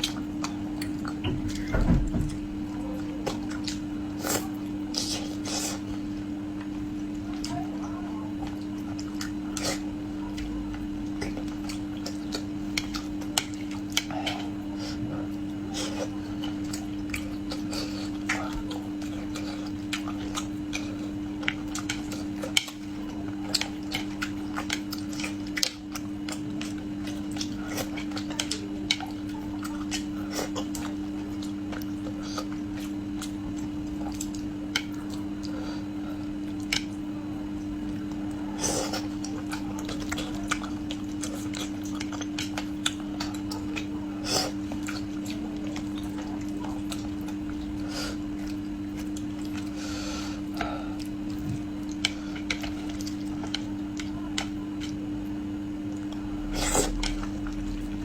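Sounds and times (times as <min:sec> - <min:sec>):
low hum: 0:06.1 - 0:15.7, 0:46.4 - 0:58.0.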